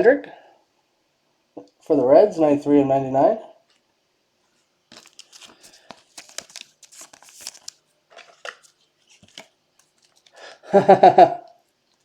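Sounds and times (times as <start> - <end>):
plastic and cards rustling: 4.5 - 10.6.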